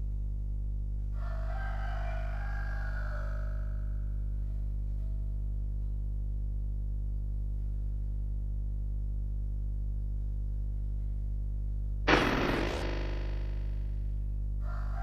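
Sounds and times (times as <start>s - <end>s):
low droning hum: 4.1s - 14.6s
loud harsh burst: 12.1s - 13.9s.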